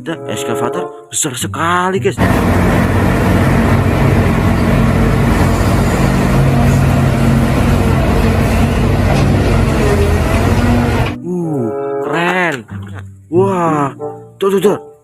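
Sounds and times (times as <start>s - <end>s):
excavator engine droning: 2.2s - 11.2s.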